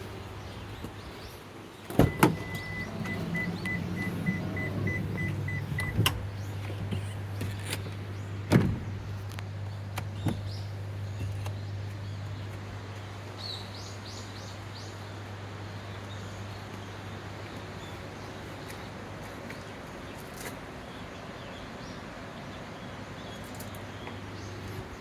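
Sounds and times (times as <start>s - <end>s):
microwave beeps: 2.0s - 6.0s
microwave humming: 2.0s - 6.8s.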